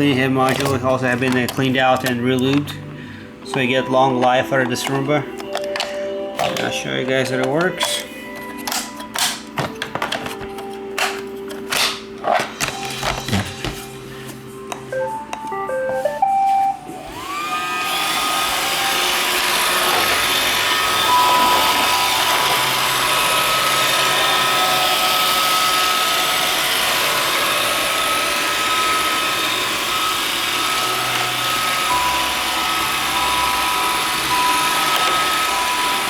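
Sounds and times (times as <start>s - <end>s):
robot vacuum motor whirring: 17.0s - 36.0s.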